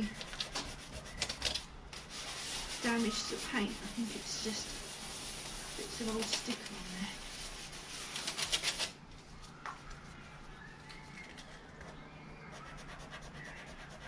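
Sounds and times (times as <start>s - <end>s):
sandpaper rasping on metal: 2.0s - 8.9s.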